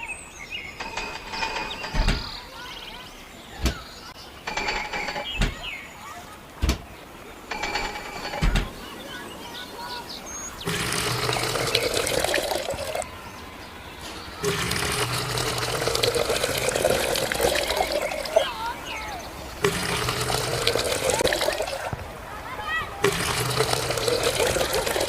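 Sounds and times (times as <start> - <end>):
electric water pump splashing: 10.6 - 13.0, 14.4 - 18.7, 19.4 - 22.1, 23.0 - 25.0
short mechanical rattle: 10.7 - 13.0, 19.6 - 21.9, 23.0 - 25.0.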